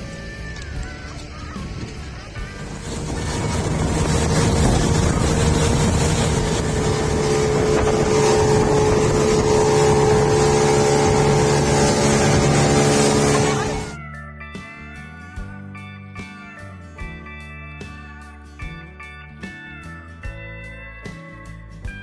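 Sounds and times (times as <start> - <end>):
engine running at speed: 0.0 - 14.0
wind rush and travel noise: 0.0 - 14.0
steel guitar music: 0.6 - 21.7.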